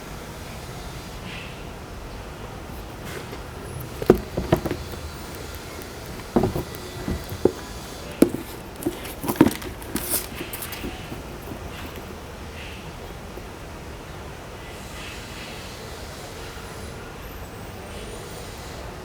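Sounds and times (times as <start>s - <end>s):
sneaker and packaging handled: 2.7s - 12.3s.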